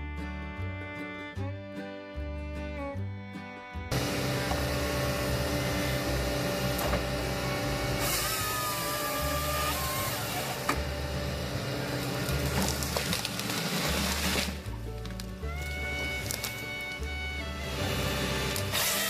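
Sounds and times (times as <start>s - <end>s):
background music: 0.0s - 19.0s
harvester head sawing timber: 3.9s - 14.7s, 15.5s - 19.0s
harvester engine running: 3.9s - 19.0s.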